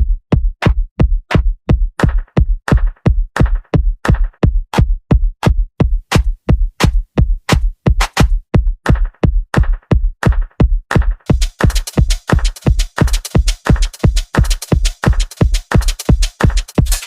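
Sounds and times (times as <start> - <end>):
drum machine kick beat: 0.0 - 17.0
crisp high percussion: 11.3 - 17.0
electronic dance music: 11.3 - 17.0.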